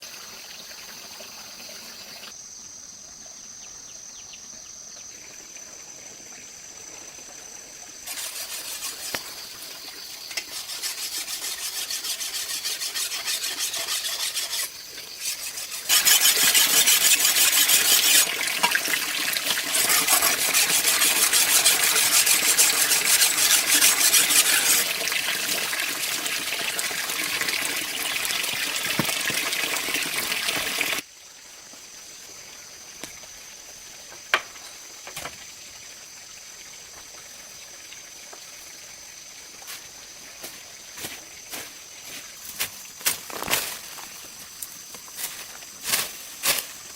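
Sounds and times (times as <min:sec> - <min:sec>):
water running and splashing: 0:08.0 - 0:31.0.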